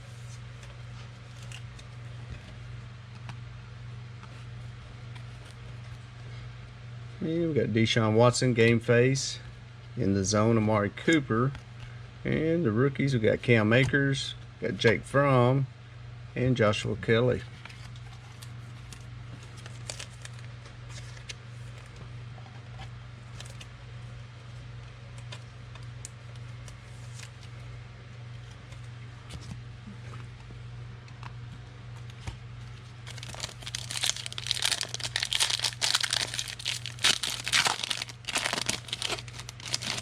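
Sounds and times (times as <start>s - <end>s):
wrapper tearing and crinkling: 19.6s - 20.4s, 33.0s - 40.0s.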